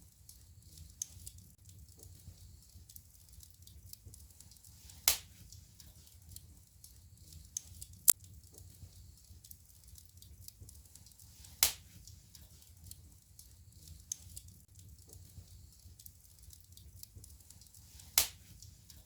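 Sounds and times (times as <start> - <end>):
wood fire crackling: 0.0 - 19.0
loud sharp fire pops: 5.0 - 5.4, 11.6 - 12.0, 18.2 - 18.5.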